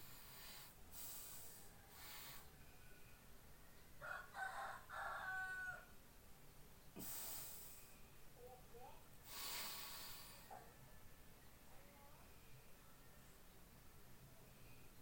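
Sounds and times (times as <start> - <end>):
rooster crowing faintly: 1.6 - 6.0.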